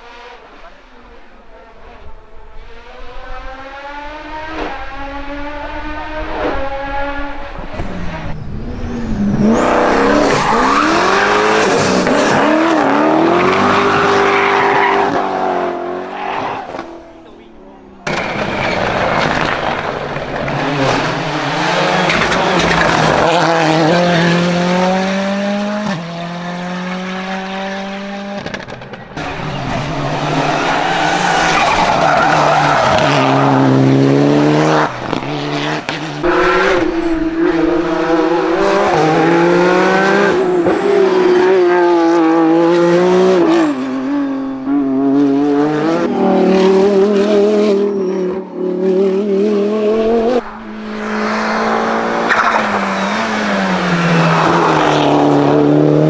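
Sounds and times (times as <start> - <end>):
race car engine revving: 0.0 - 56.0
tyres squealing: 18.1 - 24.4, 29.2 - 34.0, 50.0 - 55.4.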